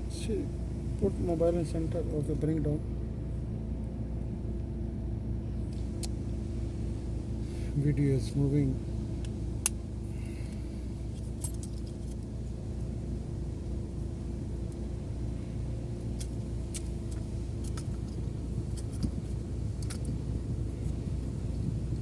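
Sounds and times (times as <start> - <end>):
steady low hum: 0.0 - 22.0.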